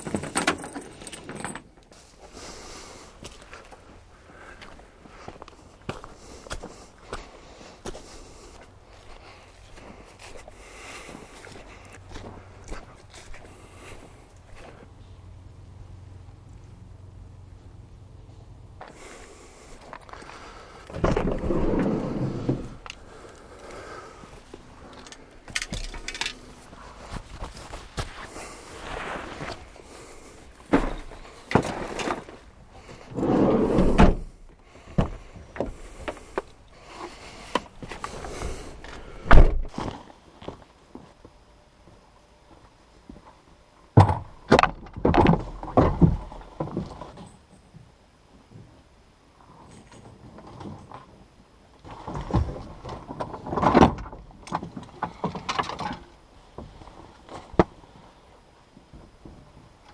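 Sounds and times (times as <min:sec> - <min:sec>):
knocking and scraping in a rowboat: 0:20.9 - 0:22.8, 0:25.8 - 0:38.8, 0:44.0 - 0:47.3, 0:51.8 - 0:58.0.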